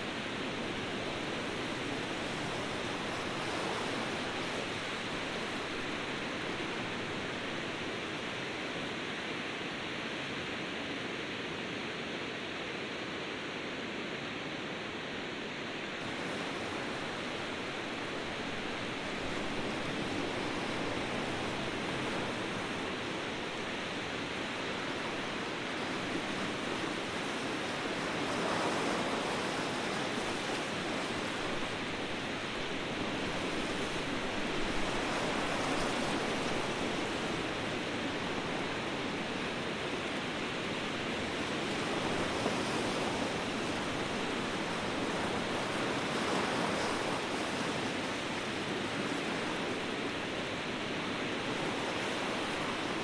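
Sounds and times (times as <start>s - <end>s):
ocean surf washing: 16.0s - 53.0s.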